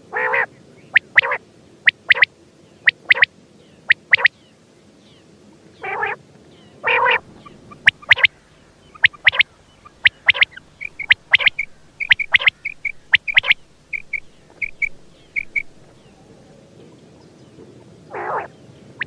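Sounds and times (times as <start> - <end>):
quail calling: 0.0 - 4.3, 5.8 - 6.2, 6.8 - 16.6, 18.1 - 19.0
soft double chirps: 2.9 - 3.3, 3.9 - 4.3, 7.2 - 16.1.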